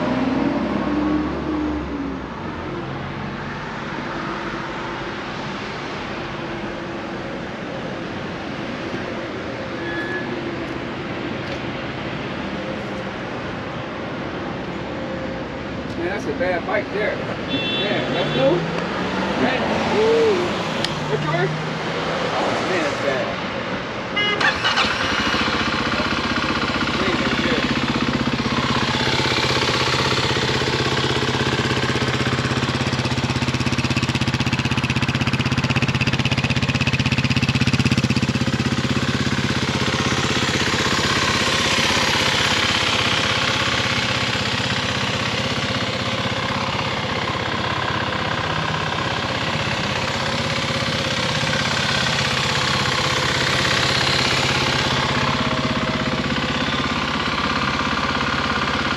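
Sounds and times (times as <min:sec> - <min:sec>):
motorcycle engine idling: 0:17.5 - 0:17.8, 0:24.4 - 0:58.9.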